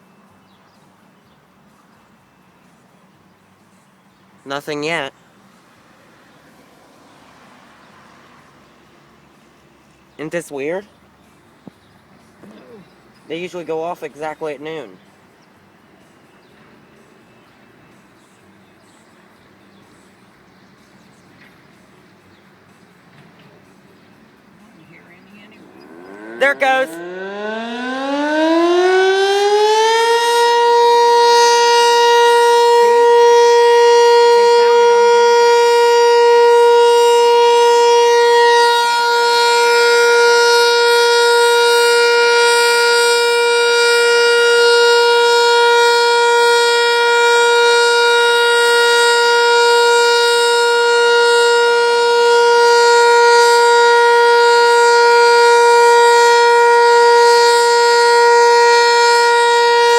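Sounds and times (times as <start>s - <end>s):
tornado siren wailing: 25.4s - 59.9s.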